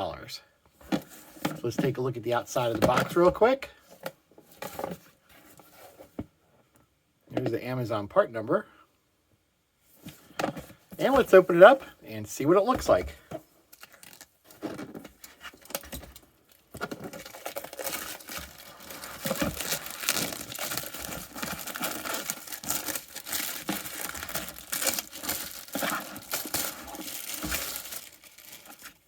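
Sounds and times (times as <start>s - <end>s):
cardboard packaging rustling: 10.0s - 12.0s, 12.6s - 29.0s.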